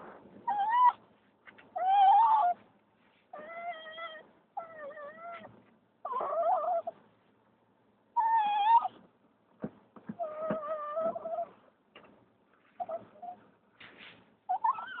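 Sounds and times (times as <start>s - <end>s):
dog whining: 0.4s - 1.0s, 1.7s - 2.6s, 3.3s - 7.0s, 8.2s - 9.0s, 10.1s - 11.6s, 12.8s - 13.5s, 14.5s - 15.0s.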